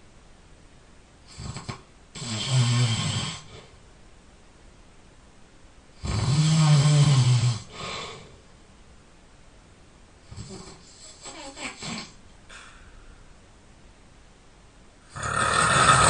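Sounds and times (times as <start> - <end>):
person snoring loudly: 1.3 - 3.7, 6.0 - 8.1, 15.1 - 16.0.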